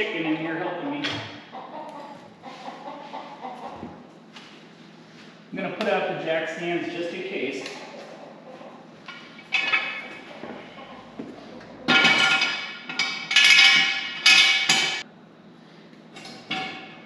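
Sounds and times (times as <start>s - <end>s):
steel jack stands clanking: 11.6s - 15.0s.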